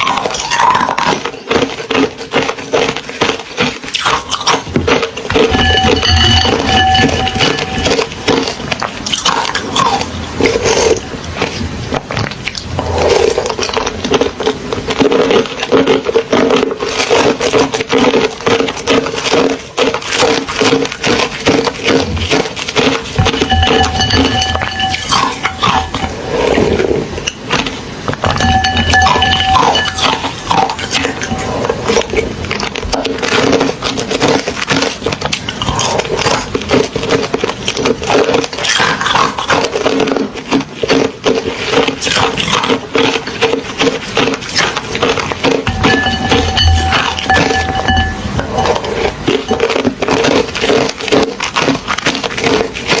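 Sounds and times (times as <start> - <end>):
crunching ice in mouth: 0.0 - 53.0.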